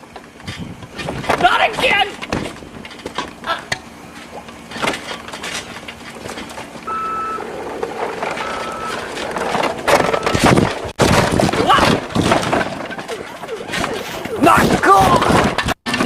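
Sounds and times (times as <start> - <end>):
toys rattling and clattering: 0.1 - 16.0
short electronic beeps: 6.9 - 7.5, 8.4 - 9.1.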